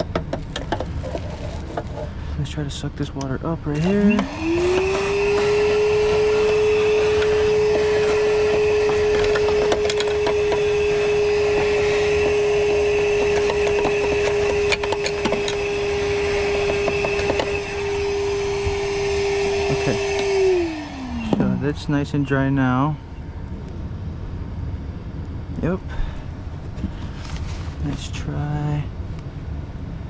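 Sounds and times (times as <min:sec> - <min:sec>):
wet dry vacuum running: 0:00.0 - 0:23.1.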